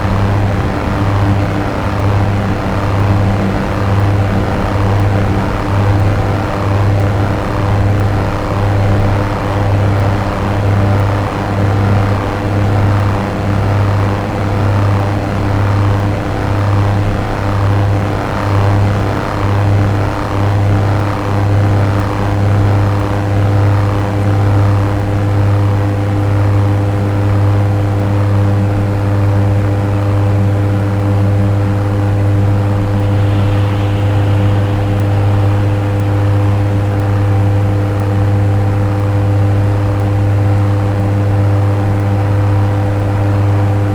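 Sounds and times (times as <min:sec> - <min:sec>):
pulsing swept synth texture: 0:00.0 - 0:19.5, 0:32.0 - 0:39.3
low synthesizer drone: 0:00.0 - 0:25.5, 0:30.5 - 0:43.9.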